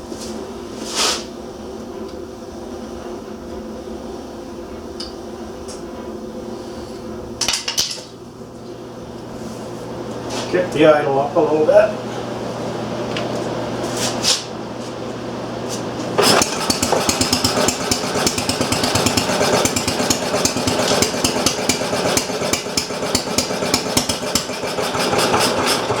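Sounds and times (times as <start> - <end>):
single-cylinder engine running: 8.4 - 26.0.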